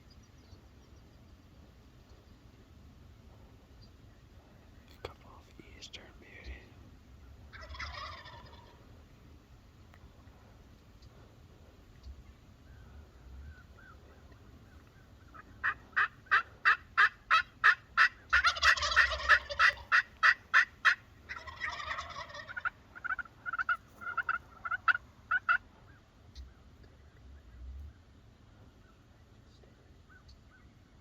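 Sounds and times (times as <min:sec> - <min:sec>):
turkeys gobbling: 0:07.5 - 0:08.9, 0:12.0 - 0:27.2.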